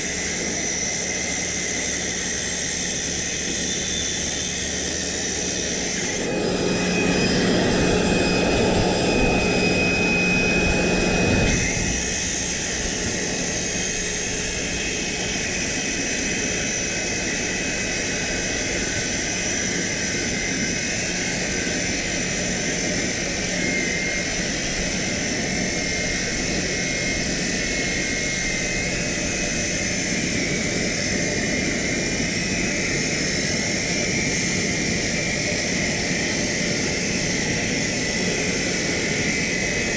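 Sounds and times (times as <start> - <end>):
circular saw cutting concrete: 0.0 - 39.9.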